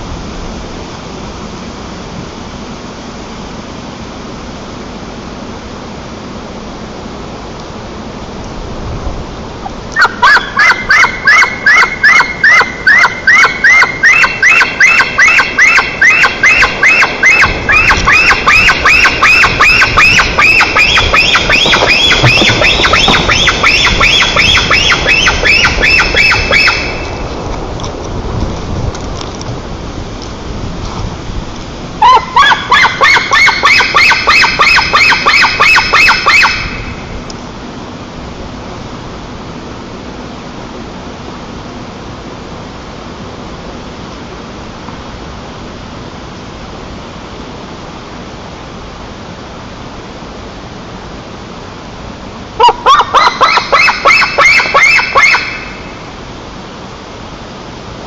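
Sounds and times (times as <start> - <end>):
electronic alarm siren chirps: 10.0 - 27.2, 32.0 - 37.0, 52.6 - 56.0.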